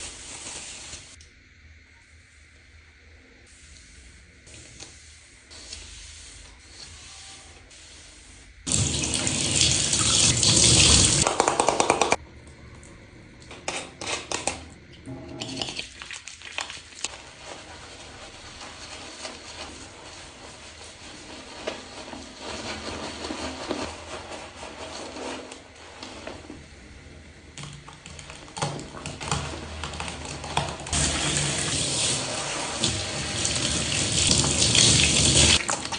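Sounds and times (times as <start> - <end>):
water running and splashing: 8.7 - 11.3, 15.4 - 24.8, 28.7 - 35.9
hair rubbing noises: 15.6 - 26.6.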